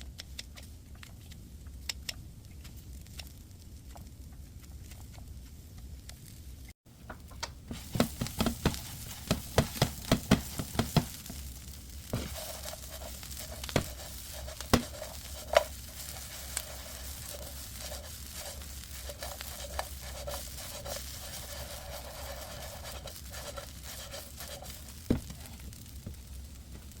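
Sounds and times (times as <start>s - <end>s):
oil sizzling in a pan: 7.0s - 27.0s
spoon knocking against pan: 7.1s - 11.4s.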